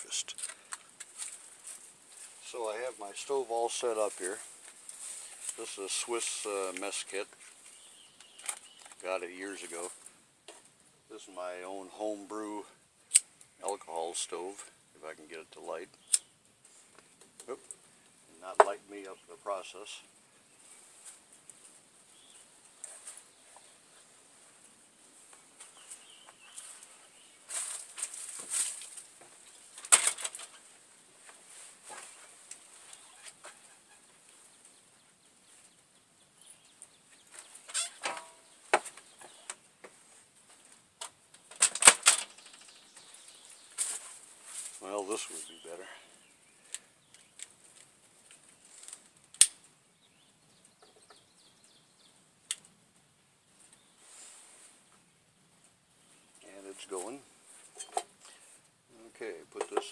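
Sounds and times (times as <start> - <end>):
rustling and clicking of camp stove: 0.2 - 2.4, 6.7 - 9.1, 27.5 - 34.4, 36.6 - 44.8, 46.6 - 49.7, 57.5 - 58.7
faint bird chirps: 32.0 - 39.6.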